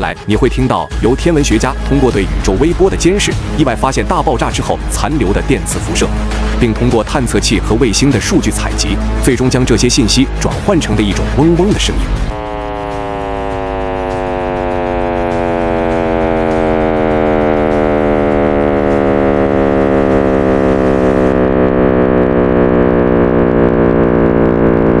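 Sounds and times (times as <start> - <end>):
humming chord gliding downward: 10.8 - 25.0.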